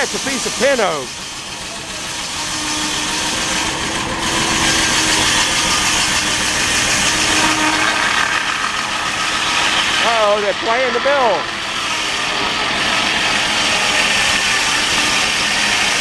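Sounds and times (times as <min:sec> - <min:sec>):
saw blade cutting log: 0:00.0 - 0:16.0
steady machine hum: 0:00.0 - 0:16.0.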